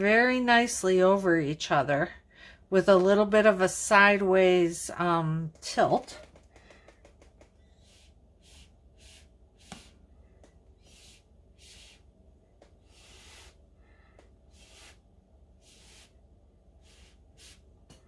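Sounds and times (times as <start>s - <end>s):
soft puffs of hissing air: 6.4s - 18.0s.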